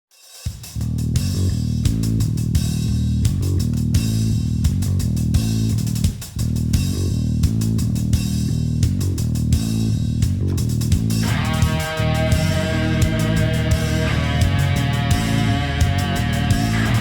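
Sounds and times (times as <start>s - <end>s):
rock music: 10.9s - 17.0s.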